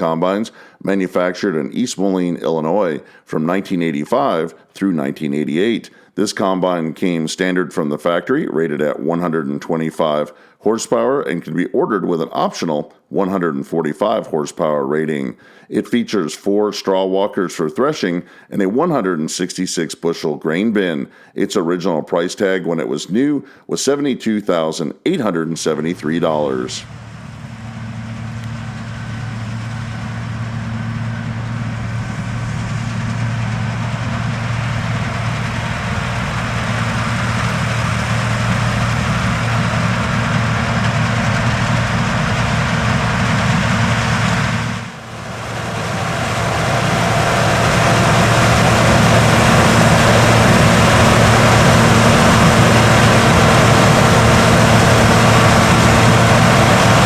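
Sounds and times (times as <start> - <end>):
diesel engine hum: 26.2 - 57.0
threshing machinery noise: 26.4 - 57.0.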